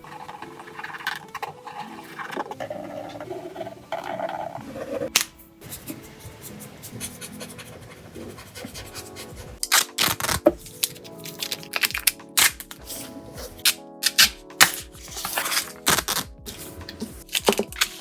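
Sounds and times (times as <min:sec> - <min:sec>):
paper rustling and crinkling: 0:09.6 - 0:18.0.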